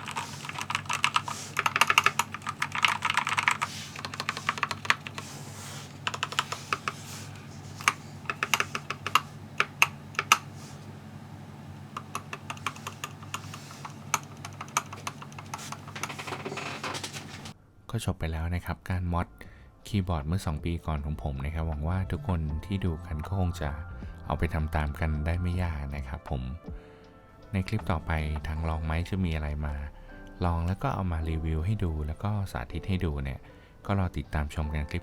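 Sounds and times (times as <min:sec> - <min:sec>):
mechanical keyboard typing: 0:00.0 - 0:10.5, 0:12.0 - 0:17.5.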